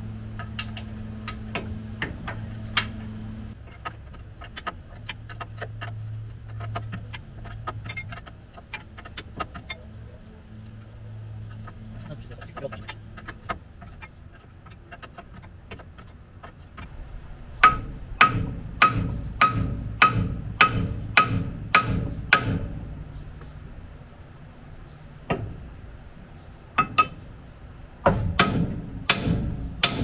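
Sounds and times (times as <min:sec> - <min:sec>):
hammer striking steel: 0:16.9 - 0:23.0, 0:26.8 - 0:27.2, 0:28.1 - 0:30.0.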